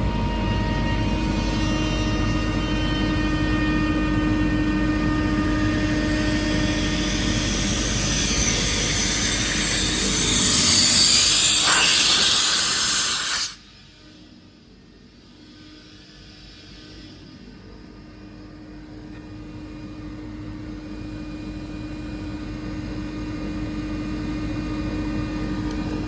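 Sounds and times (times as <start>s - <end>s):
air compressor running: 0.0s - 13.7s
rushing hiss: 8.4s - 13.6s.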